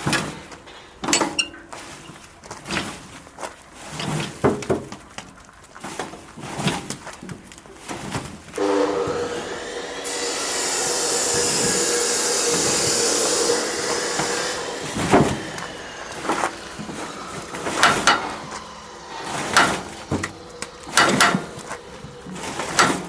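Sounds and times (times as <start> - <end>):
metal rubbing with steady tone: 7.7 - 23.0
loud hiss: 8.6 - 23.0.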